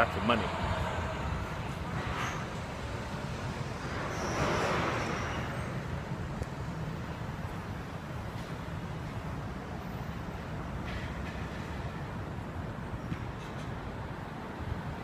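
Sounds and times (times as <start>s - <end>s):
vehicle passing: 0.0s - 6.1s
road traffic noise: 0.0s - 15.0s.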